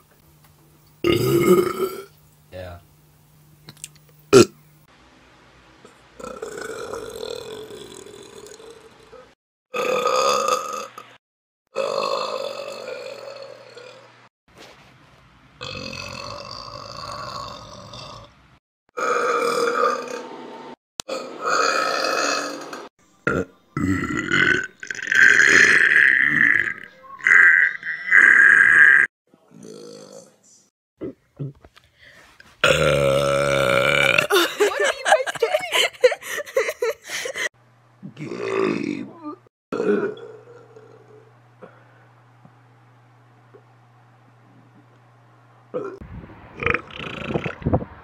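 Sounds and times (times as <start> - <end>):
person belching: 1.0 - 2.1, 4.3 - 4.6, 6.2 - 14.1, 15.6 - 18.3, 19.0 - 20.2, 21.0 - 30.3, 31.0 - 31.6, 32.6 - 34.8, 38.0 - 41.8, 45.8 - 46.0, 46.6 - 47.6
person burping: 1.0 - 2.1, 4.3 - 4.6, 6.2 - 14.1, 15.6 - 18.3, 19.0 - 20.2, 21.0 - 30.3, 31.0 - 31.6, 32.6 - 35.1, 38.0 - 41.8, 45.8 - 46.0, 46.6 - 47.6.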